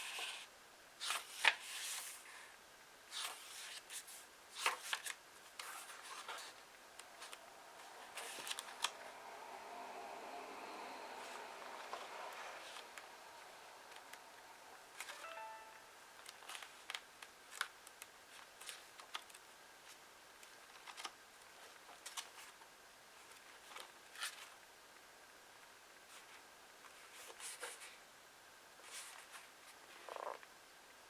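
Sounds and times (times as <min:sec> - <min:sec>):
book pages rustling: 0:01.0 - 0:02.2, 0:03.1 - 0:09.1, 0:11.2 - 0:13.1, 0:16.2 - 0:22.6.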